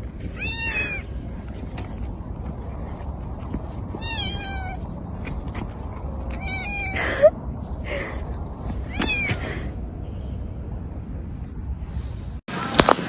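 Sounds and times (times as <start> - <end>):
cat meowing: 0.3 - 1.2, 4.0 - 4.8, 6.3 - 7.3, 8.8 - 9.4.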